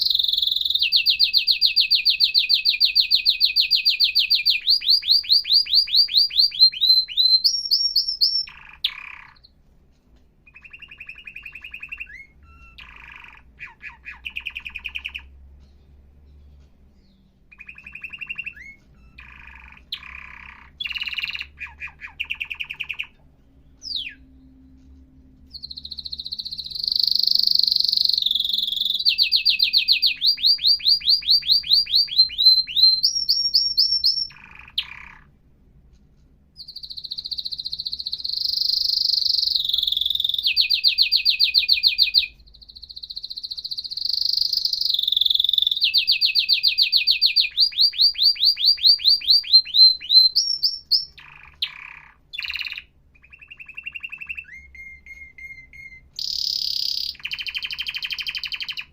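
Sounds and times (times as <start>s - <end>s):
canary singing trills: 0.0s - 9.6s, 10.4s - 35.8s, 36.5s - 58.9s
short bird chirps: 10.4s - 15.9s, 16.6s - 23.2s, 36.6s - 58.9s.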